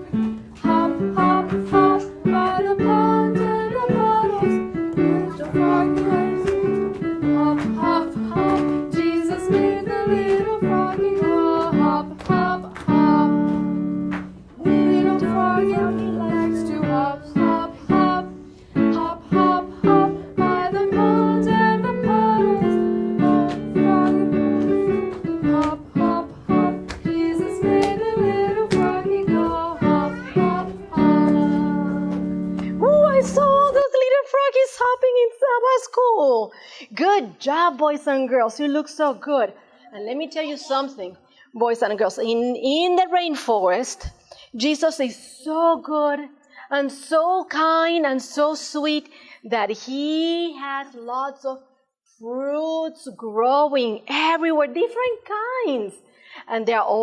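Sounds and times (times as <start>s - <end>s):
children's song singing: 0.0s - 35.6s.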